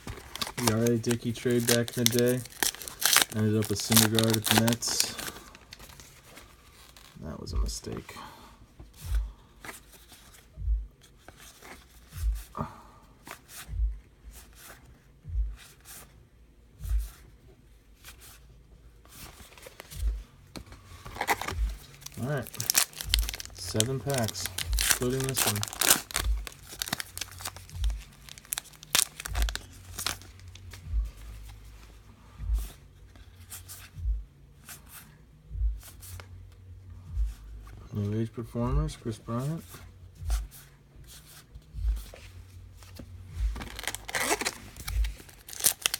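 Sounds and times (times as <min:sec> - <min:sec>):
foil wrapper tearing and crinkling: 0:00.0 - 0:06.1, 0:21.0 - 0:30.8, 0:43.6 - 0:45.9
cards sliding and rustling: 0:00.0 - 0:07.2, 0:18.0 - 0:32.0, 0:40.4 - 0:45.9
trading cards thumping: 0:00.0 - 0:08.0, 0:19.3 - 0:31.6, 0:41.8 - 0:45.9.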